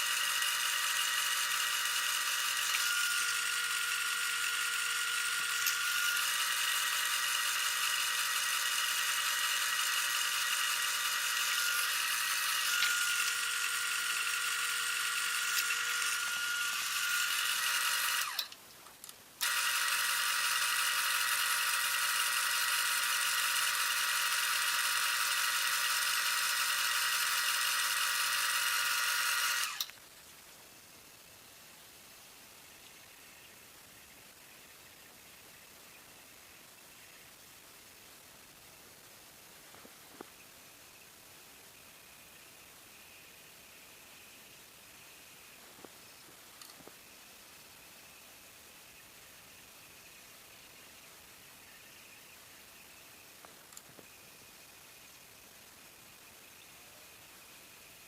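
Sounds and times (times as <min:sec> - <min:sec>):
wood lathe running: 0:00.0 - 0:18.4, 0:19.4 - 0:29.9.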